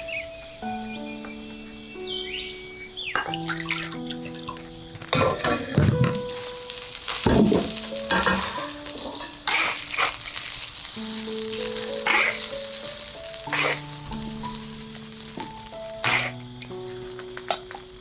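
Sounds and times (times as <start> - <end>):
soft background music: 0.0 - 18.0
spatula scraping a pan: 5.2 - 16.4
food sizzling in a pan: 5.2 - 18.0.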